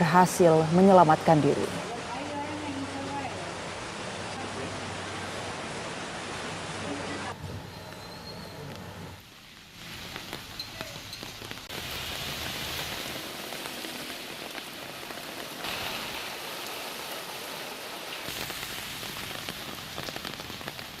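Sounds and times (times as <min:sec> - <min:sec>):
heavy rain pouring: 0:00.0 - 0:21.0.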